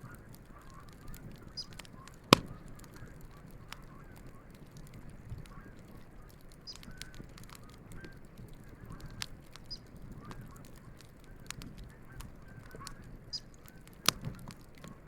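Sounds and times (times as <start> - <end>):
campfire crackling: 0.0 - 15.0
geese honking faintly: 0.0 - 15.0
sharp pop of fire: 0.7 - 3.2.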